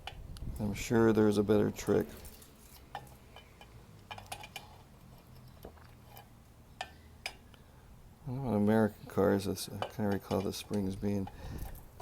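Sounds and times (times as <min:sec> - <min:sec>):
light metallic clicks and taps: 0:09.8 - 0:11.8.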